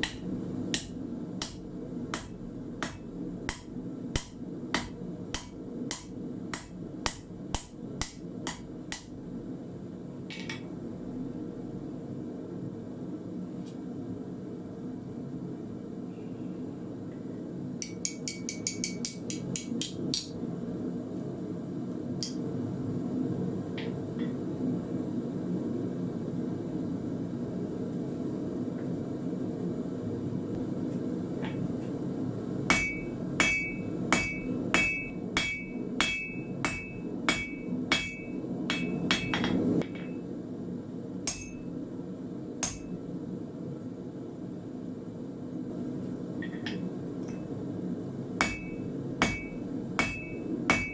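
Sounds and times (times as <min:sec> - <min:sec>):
hammer ringing on anvil: 0:32.7 - 0:40.1, 0:41.3 - 0:41.6, 0:48.4 - 0:50.9.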